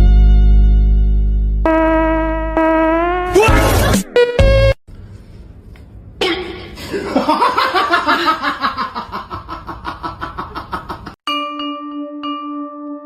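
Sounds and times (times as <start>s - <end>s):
person laughing hard: 6.9s - 11.2s.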